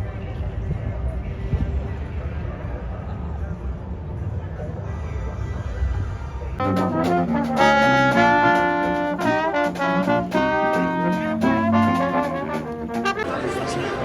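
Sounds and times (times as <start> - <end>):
jazzy brass music: 6.6 - 14.0.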